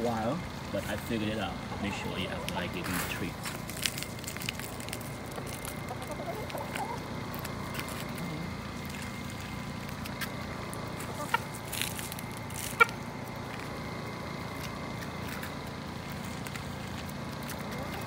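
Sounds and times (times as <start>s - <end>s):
steady outdoor hiss: 0.0s - 18.0s
hens clucking softly: 5.3s - 7.2s, 11.0s - 11.6s.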